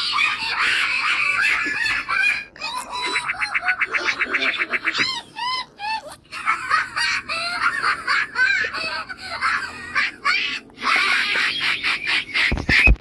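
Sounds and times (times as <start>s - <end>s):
sped-up cartoon character laughing: 0.0s - 13.0s.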